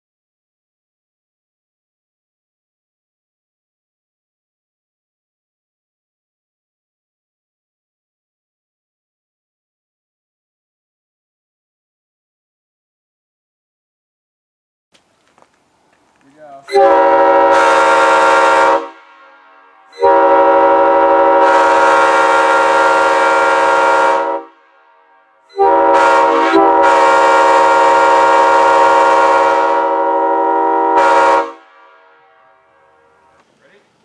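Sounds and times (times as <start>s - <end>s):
railroad air horn blasts: 16.5s - 33.4s.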